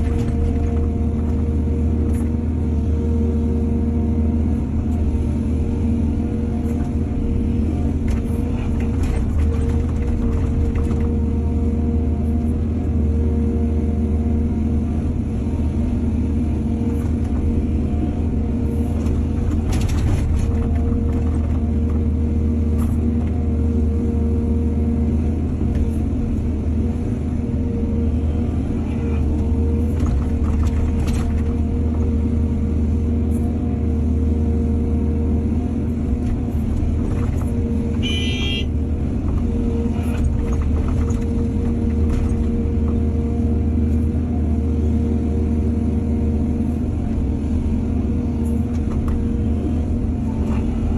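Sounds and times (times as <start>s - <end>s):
diesel engine running under load: 0.0s - 50.9s.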